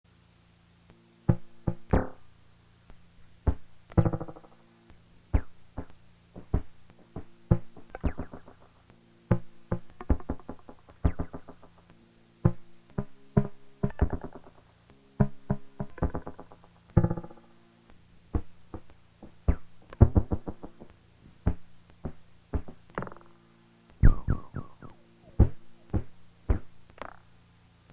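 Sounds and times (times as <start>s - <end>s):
faint low drone: 0.9s - 27.4s
synthesizer plucked notes: 5.4s - 11.9s, 12.5s - 17.4s, 24.0s - 27.2s.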